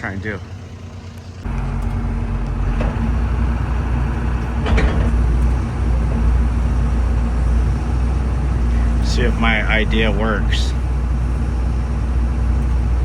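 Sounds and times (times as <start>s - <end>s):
heavy machine engine running: 0.0s - 13.0s
metal clank: 1.5s - 7.0s.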